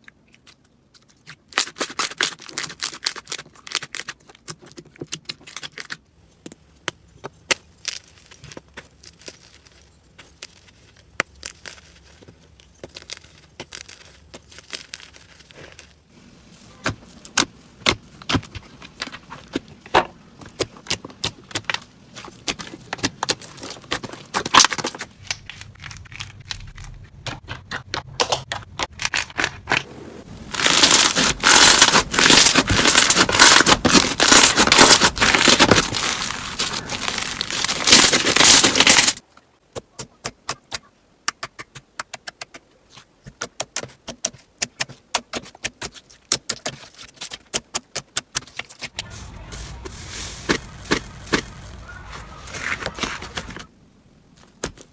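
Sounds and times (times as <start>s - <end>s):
slime crackling and popping: 7.5s - 16.0s, 28.5s - 39.2s, 49.0s - 53.7s.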